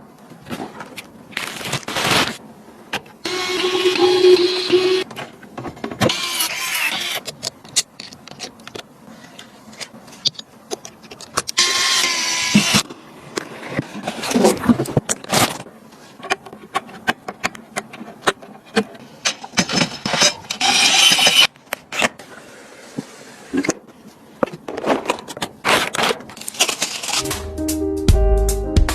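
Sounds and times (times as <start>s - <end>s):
computer parts clicking and knocking: 16.3s - 21.5s.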